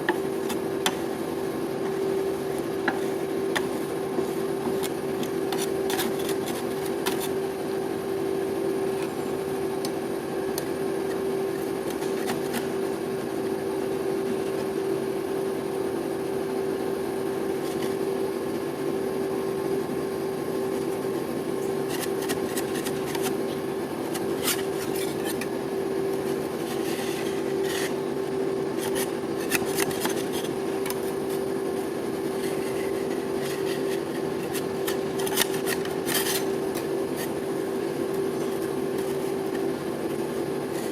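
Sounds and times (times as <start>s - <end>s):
steady machine hum: 0.0s - 40.9s
metal spatulas scraping cold plate: 32.4s - 37.3s.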